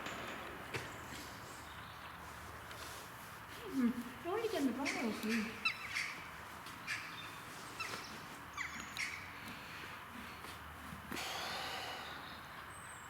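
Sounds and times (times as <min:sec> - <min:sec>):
bird calls: 0:04.6 - 0:09.8.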